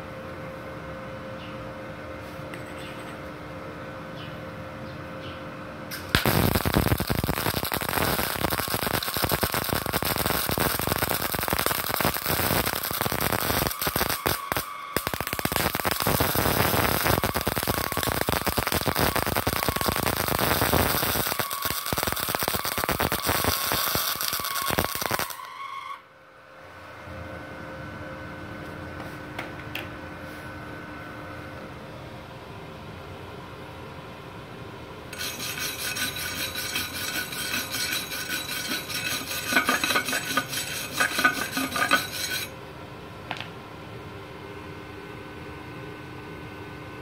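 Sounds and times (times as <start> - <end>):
welder machine hum: 5.8 - 26.0, 34.9 - 45.2
welding arc crackling: 5.9 - 25.5, 35.2 - 42.5.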